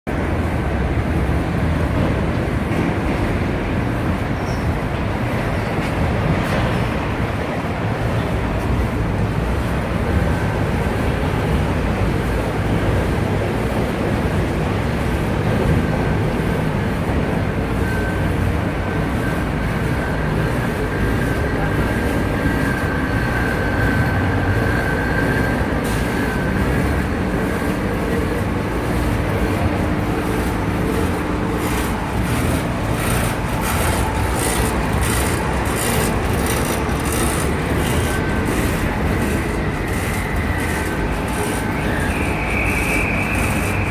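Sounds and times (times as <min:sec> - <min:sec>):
lathe mechanical drone: 0:08.1 - 0:43.9
rapid clicking: 0:30.1 - 0:42.1.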